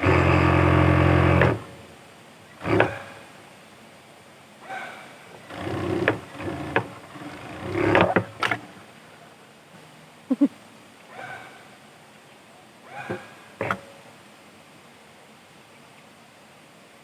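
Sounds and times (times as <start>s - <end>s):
sewing machine running: 0.0s - 1.8s, 5.5s - 8.2s.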